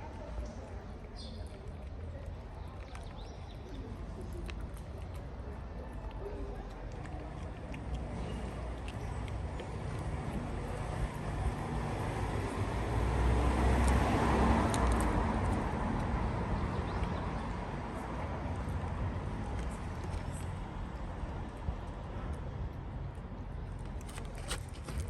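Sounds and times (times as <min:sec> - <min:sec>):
car passing by: 0:11.6 - 0:16.7.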